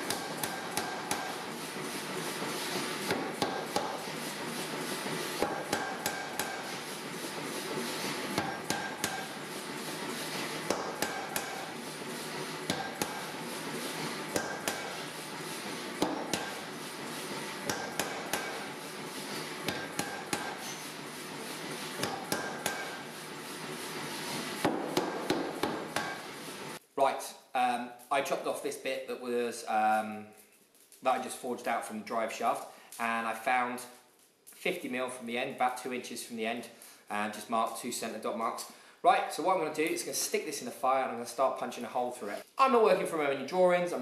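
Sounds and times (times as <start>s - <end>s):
hammer striking steel on anvil: 0.0s - 1.6s, 2.9s - 4.2s, 5.3s - 11.8s, 12.4s - 21.0s, 21.9s - 23.1s, 24.6s - 26.4s.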